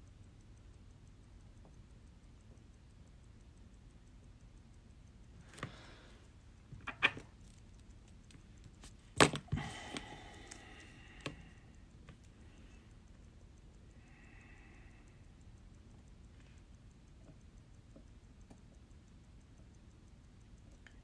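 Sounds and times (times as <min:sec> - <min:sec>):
small metal tools clicking: 0:04.3 - 0:15.2.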